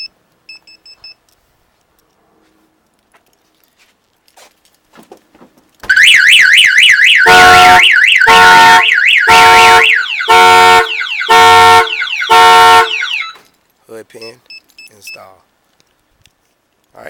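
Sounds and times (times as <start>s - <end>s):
car alarm siren: 5.9s - 13.4s.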